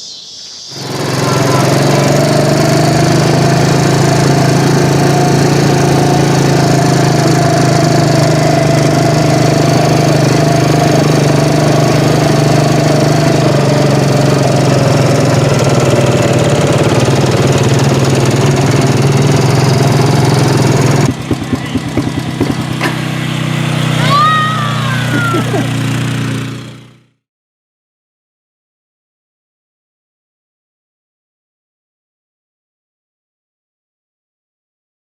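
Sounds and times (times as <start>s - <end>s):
engine running steadily: 0.8s - 27.2s.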